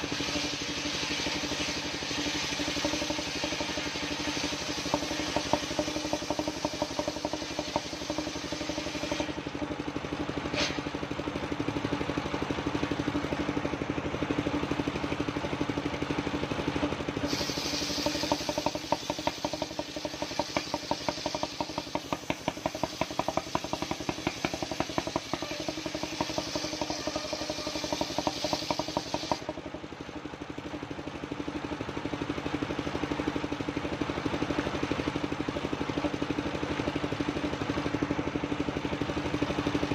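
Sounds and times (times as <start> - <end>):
saw hissing through timber: 0.0 - 9.6, 10.4 - 11.0, 17.2 - 29.5
sawmill engine running: 0.0 - 39.9.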